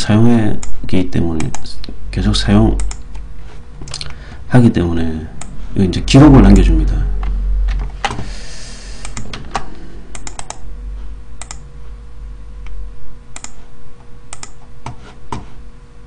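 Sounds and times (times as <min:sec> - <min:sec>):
keyboard typing: 0:09.0 - 0:10.6, 0:11.4 - 0:11.6, 0:13.3 - 0:13.6, 0:14.3 - 0:15.4.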